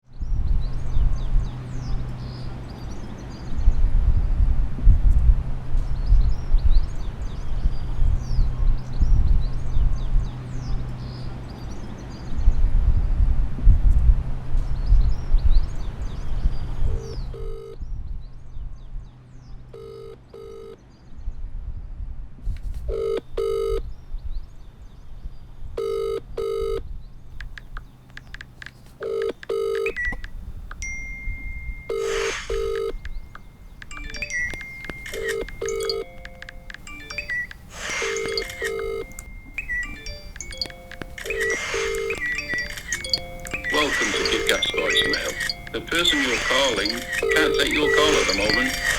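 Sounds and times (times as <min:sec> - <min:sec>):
telephone ringback tone: 0:17.0 - 0:17.8, 0:19.8 - 0:20.8, 0:22.9 - 0:23.8, 0:25.8 - 0:26.8, 0:29.0 - 0:48.9
small chirps: 0:27.4 - 0:48.9
thin steady high tone: 0:29.1 - 0:48.9.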